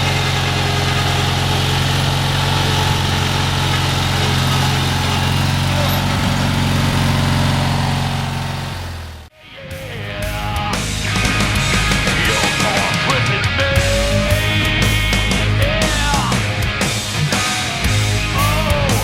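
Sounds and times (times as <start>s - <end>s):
twin engine running steadily: 0.0s - 9.3s.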